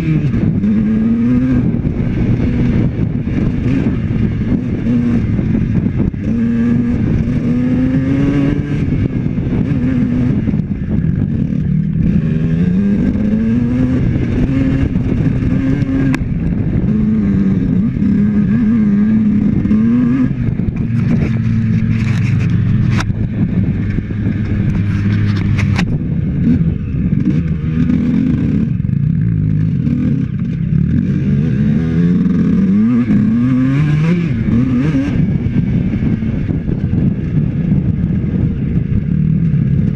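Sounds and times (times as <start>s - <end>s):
dirt bike engine revving: 0.0s - 39.9s
sharp clicks or knocks: 20.7s - 23.2s, 24.4s - 26.0s.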